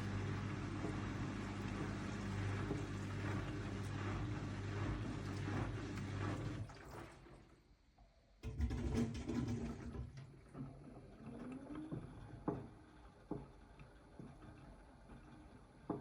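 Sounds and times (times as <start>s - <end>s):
washing machine motor whine: 0.0s - 7.6s, 8.4s - 16.0s
water sloshing in drum: 0.0s - 7.7s.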